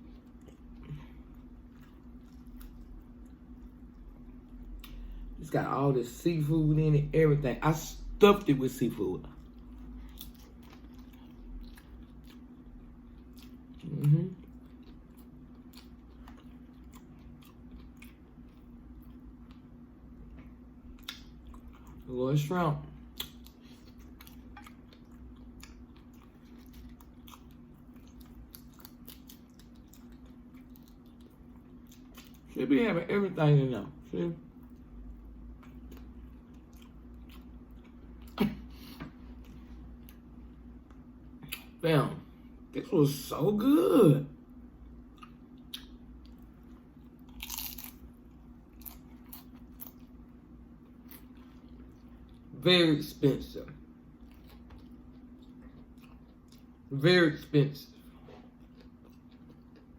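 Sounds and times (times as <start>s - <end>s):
chewing crunchy food: 0.0s - 5.3s, 9.2s - 22.1s, 22.9s - 32.6s, 34.5s - 41.8s, 44.8s - 52.5s, 54.1s - 56.9s, 57.9s - 59.9s
steady low hum: 0.0s - 59.9s.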